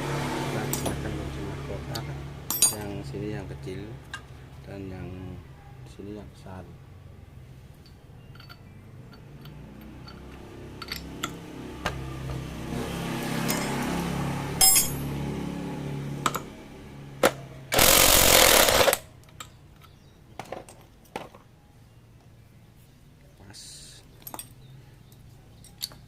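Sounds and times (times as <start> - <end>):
power tool humming: 17.7 - 19.0.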